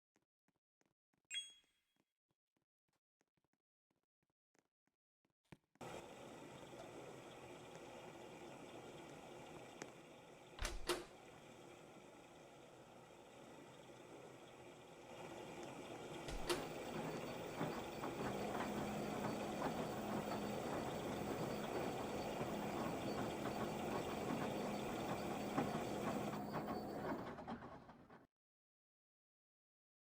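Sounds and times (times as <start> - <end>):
steady hum: 5.8 - 27.2
washing machine rattling: 12.5 - 28.2.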